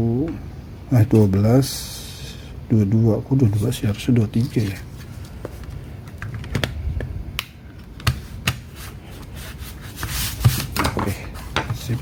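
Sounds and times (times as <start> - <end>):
rustling scrape: 8.7 - 12.0.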